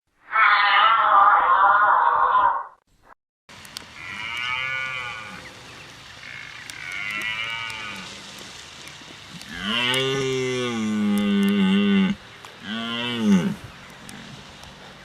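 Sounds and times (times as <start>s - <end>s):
cattle mooing: 4.0s - 5.5s, 6.2s - 8.1s, 9.4s - 14.4s.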